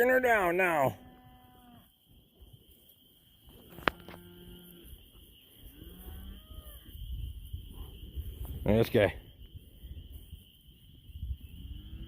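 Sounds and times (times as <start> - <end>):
cow mooing: 3.8 - 4.9.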